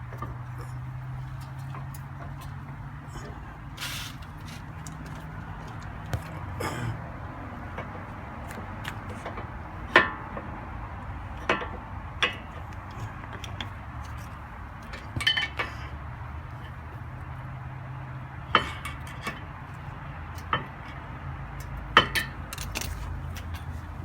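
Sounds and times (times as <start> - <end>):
metal brake parts clinking: 13.3 - 15.8, 21.6 - 23.8.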